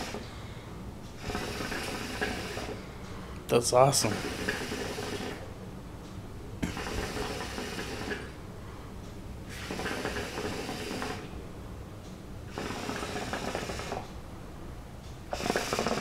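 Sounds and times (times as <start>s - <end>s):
hookah water bubbling: 0.0s - 0.2s, 1.2s - 2.8s, 4.1s - 5.5s, 6.6s - 8.4s, 9.5s - 11.3s, 12.5s - 14.1s, 15.3s - 16.0s.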